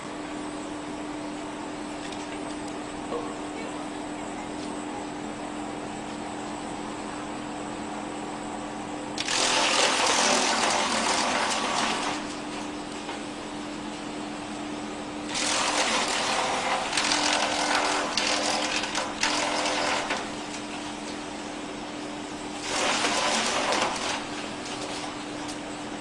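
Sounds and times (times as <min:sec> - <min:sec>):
wood chipper humming: 0:00.0 - 0:26.0
loud wood chipping: 0:09.2 - 0:12.3, 0:15.3 - 0:20.3, 0:22.6 - 0:24.5.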